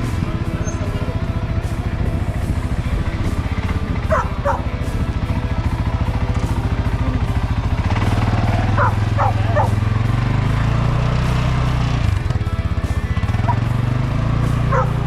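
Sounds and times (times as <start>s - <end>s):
atv engine running: 0.0s - 15.0s
dog barking: 4.0s - 4.7s, 8.7s - 9.8s, 14.7s - 15.0s.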